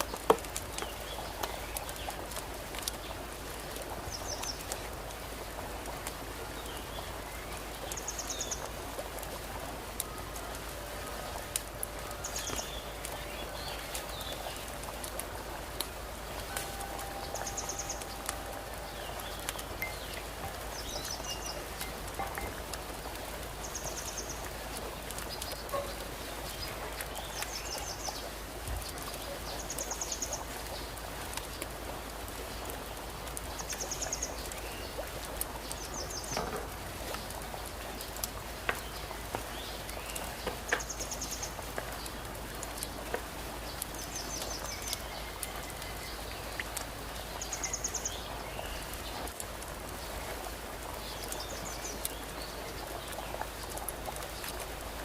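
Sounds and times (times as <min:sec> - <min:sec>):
steady background hiss: 0:00.0 - 0:55.0
bird high-pitched trill: 0:16.6 - 0:20.2.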